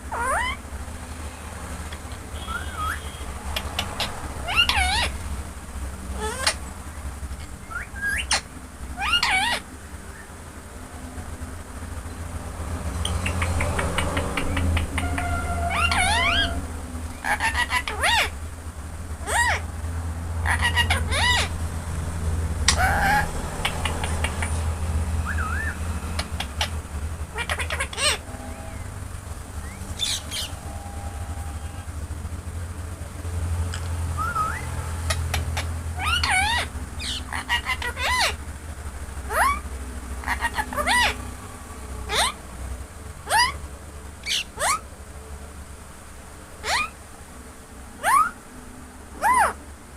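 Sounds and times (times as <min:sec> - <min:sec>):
sharp parrot calls: 0:00.0 - 0:00.7, 0:01.8 - 0:05.3, 0:06.2 - 0:06.6, 0:07.4 - 0:09.7, 0:13.0 - 0:18.4, 0:19.2 - 0:19.7, 0:20.4 - 0:21.6, 0:22.6 - 0:31.9, 0:34.1 - 0:38.4, 0:39.2 - 0:41.3, 0:42.1 - 0:42.4, 0:43.2 - 0:43.6, 0:44.2 - 0:44.8, 0:46.6 - 0:47.0, 0:48.0 - 0:48.4, 0:49.2 - 0:49.6
steady low hum: 0:00.0 - 0:49.9
parrot clicking: 0:01.9 - 0:05.0, 0:12.9 - 0:16.6, 0:21.9 - 0:25.2, 0:25.8 - 0:27.8
parrot whistling gliding notes: 0:01.9 - 0:05.2, 0:07.6 - 0:08.4, 0:13.0 - 0:18.3, 0:22.7 - 0:32.0, 0:34.0 - 0:38.4, 0:48.0 - 0:48.4.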